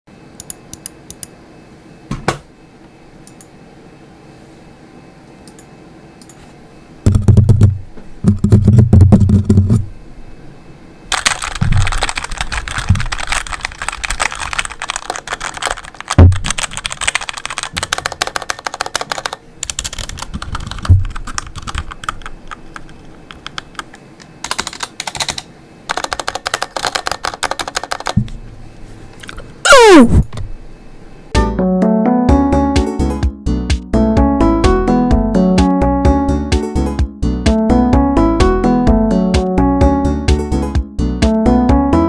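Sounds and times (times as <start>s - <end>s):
keyboard typing: 11.1s - 28.2s.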